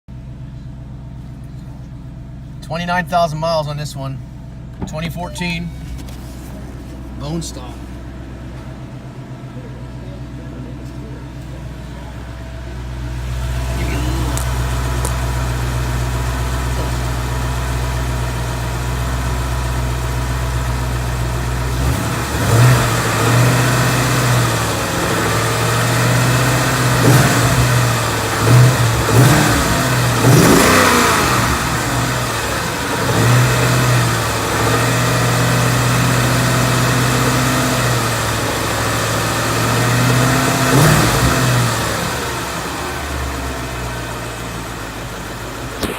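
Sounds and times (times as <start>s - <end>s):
car engine idling and revving: 0.1s - 45.9s.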